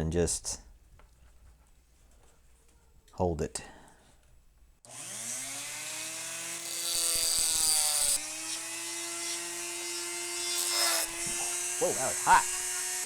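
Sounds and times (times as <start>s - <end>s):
power tool motor whining: 4.9s - 13.0s
hissing grind on metal: 9.2s - 13.0s.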